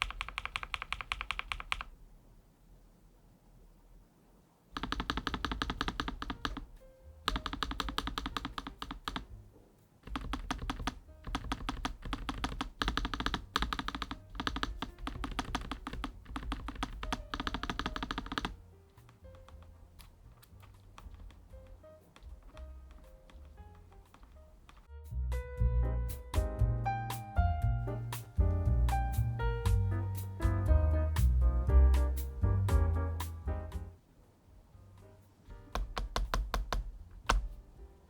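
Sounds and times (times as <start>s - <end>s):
fast typing on mechanical keyboard: 0.0s - 2.0s, 4.8s - 9.3s, 10.0s - 24.9s, 35.7s - 37.5s
soft background music: 5.3s - 34.0s, 34.7s - 38.0s.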